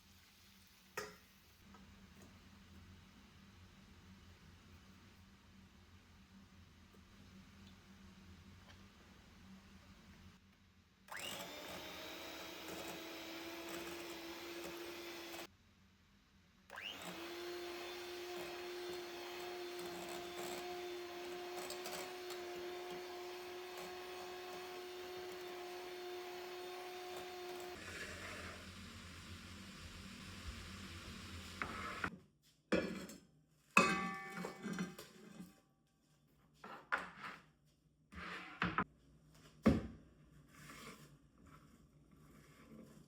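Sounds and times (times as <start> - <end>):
kitchen appliance motor humming: 11.1 - 15.5, 16.7 - 32.1.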